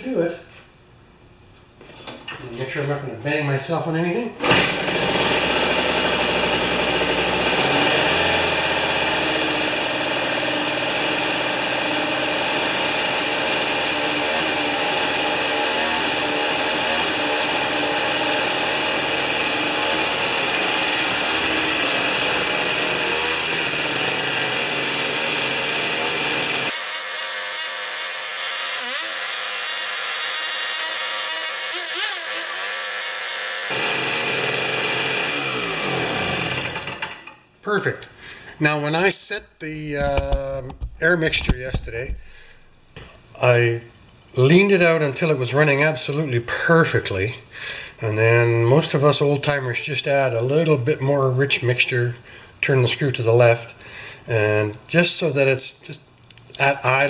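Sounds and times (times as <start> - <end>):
small two-stroke engine running: 4.8 - 36.9.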